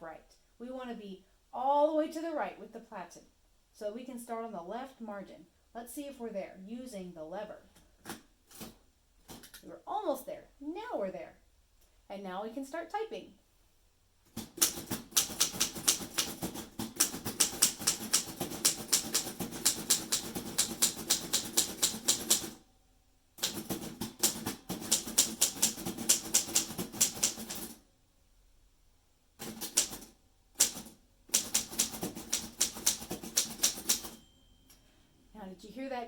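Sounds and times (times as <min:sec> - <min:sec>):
typewriter keystrokes: 0:14.4 - 0:22.6, 0:23.4 - 0:27.8, 0:29.4 - 0:34.2
typewriter carriage bell ding: 0:32.4 - 0:35.3.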